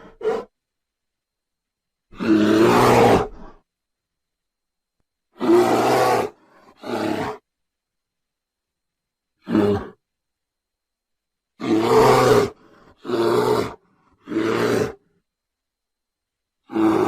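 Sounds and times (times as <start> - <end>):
bear roaring and growling: 2.1 - 3.6, 5.4 - 7.4, 9.4 - 10.0, 11.6 - 15.1, 16.6 - 17.0
faint breath: 6.4 - 6.8, 12.6 - 13.0.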